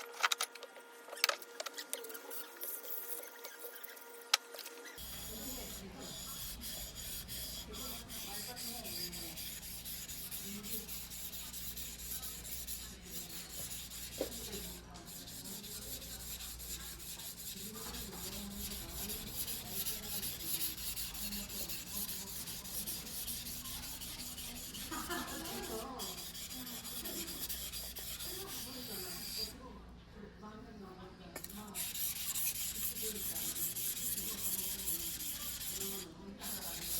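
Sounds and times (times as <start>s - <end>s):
knife scraping on whetstone: 5.0s - 29.5s, 31.4s - 36.9s.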